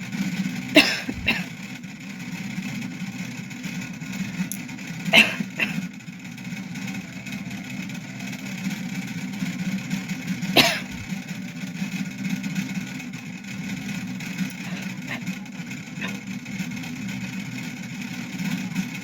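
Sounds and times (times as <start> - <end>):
steady low hum: 0.0 - 19.0
person coughing: 0.8 - 1.5, 5.2 - 5.9, 10.6 - 11.1, 14.6 - 15.4.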